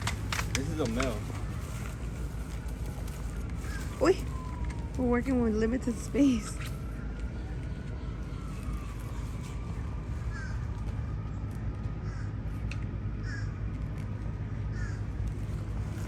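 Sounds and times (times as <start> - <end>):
steady low rumble: 0.0 - 16.0
crow cawing: 10.3 - 10.6, 12.0 - 12.4, 13.2 - 13.6, 14.7 - 15.1.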